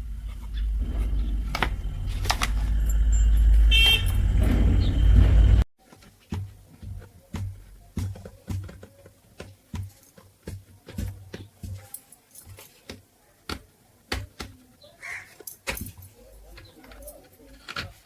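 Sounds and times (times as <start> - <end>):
low thuds: 0.0 - 5.7.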